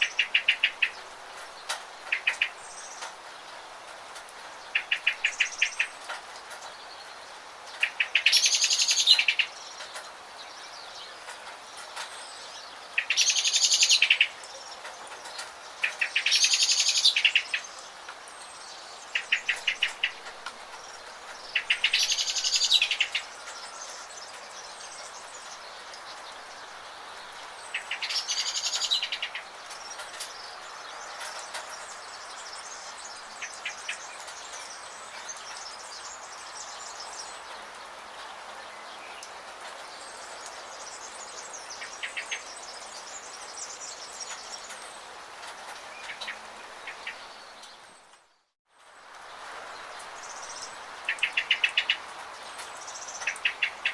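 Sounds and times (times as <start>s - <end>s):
songbird trilling: 0.0s - 1.0s, 2.0s - 3.0s, 13.0s - 14.4s, 21.4s - 24.0s, 27.7s - 29.5s, 50.2s - 52.0s
rain hissing: 0.0s - 53.9s.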